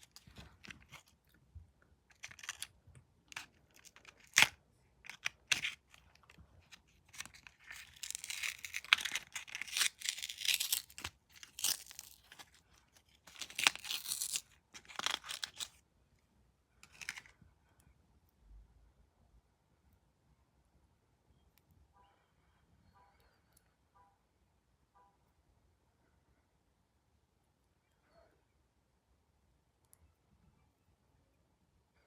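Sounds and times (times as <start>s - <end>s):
packaging tearing and crinkling: 2.1s - 2.7s, 3.3s - 15.8s, 16.8s - 17.3s.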